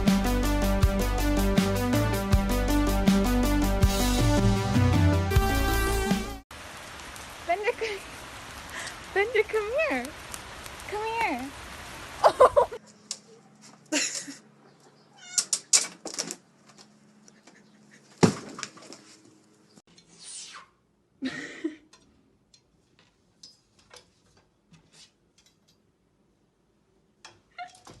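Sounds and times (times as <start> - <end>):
cat meowing: 15.1 - 15.5.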